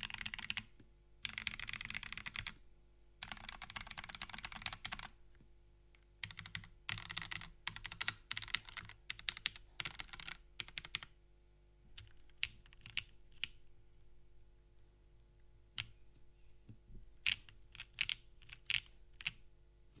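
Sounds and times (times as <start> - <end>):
mechanical keyboard typing: 0.0 - 2.6, 3.2 - 5.1, 6.2 - 11.1, 12.0 - 13.6, 17.2 - 19.4.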